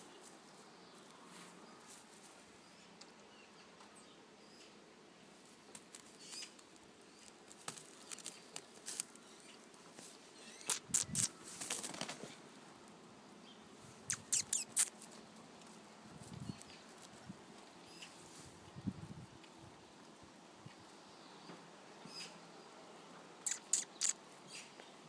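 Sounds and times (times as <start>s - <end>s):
kittens scampering and scuffling: 5.4s - 12.5s, 13.9s - 18.6s.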